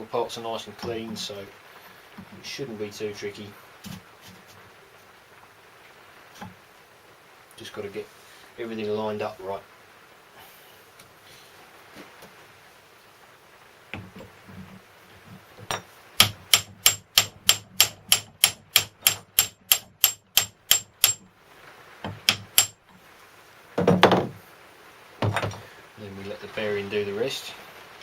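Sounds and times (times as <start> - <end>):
hammer taps on metal: 15.7 - 21.2, 22.1 - 22.8.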